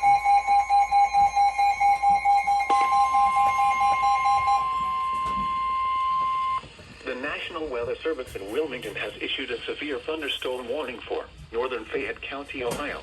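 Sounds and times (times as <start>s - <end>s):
steady alarm tone: 0.0s - 7.6s.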